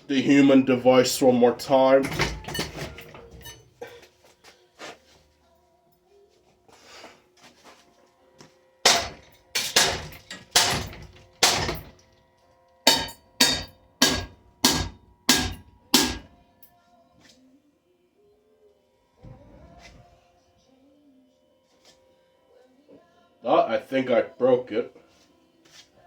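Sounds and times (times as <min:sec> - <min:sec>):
ceiling fan being struck: 0:08.8 - 0:12.1, 0:12.9 - 0:16.4.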